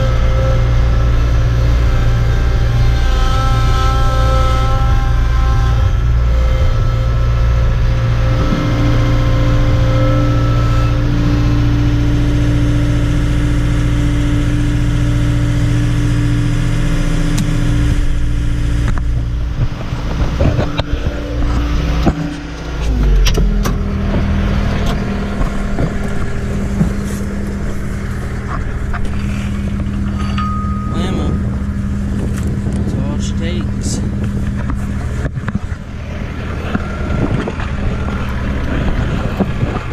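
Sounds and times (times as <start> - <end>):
farm vehicle engine running: 0.0 - 39.9
knocks and clanks: 18.8 - 32.9.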